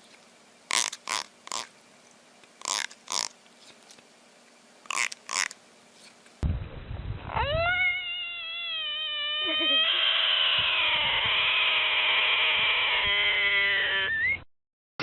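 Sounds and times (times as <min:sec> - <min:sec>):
animal howling: 0:07.3 - 0:14.4.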